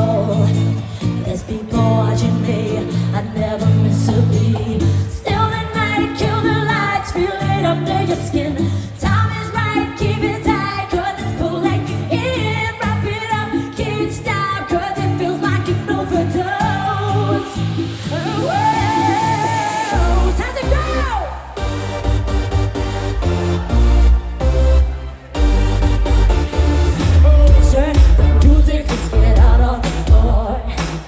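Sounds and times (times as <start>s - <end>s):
woman singing: 0.0s - 21.6s, 27.2s - 31.0s
synth backing: 16.5s - 31.0s
pulsing bass line: 19.9s - 30.8s.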